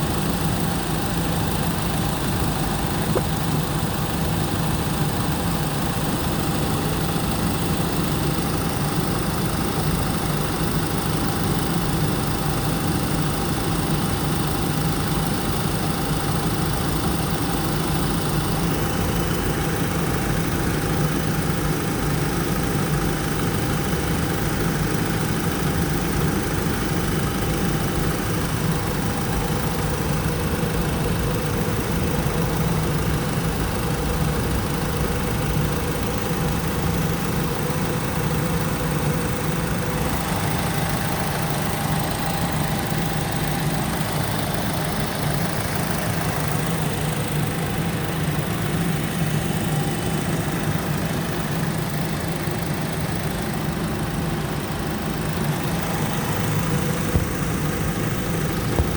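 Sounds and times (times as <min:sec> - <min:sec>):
car engine idling: 0:16.4 - 0:58.9.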